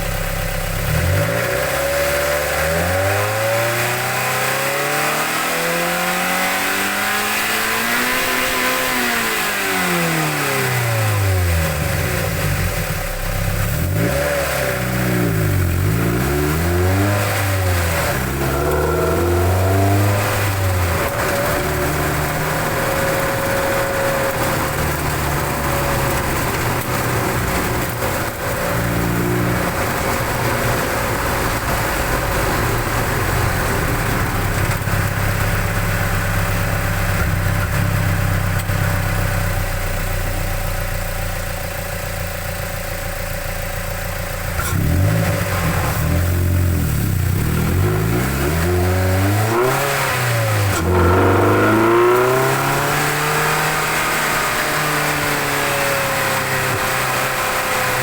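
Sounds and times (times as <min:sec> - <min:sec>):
car engine idling: 0:00.0 - 0:02.8, 0:10.9 - 0:14.1, 0:14.8 - 0:49.6
car engine revving: 0:00.0 - 0:58.0.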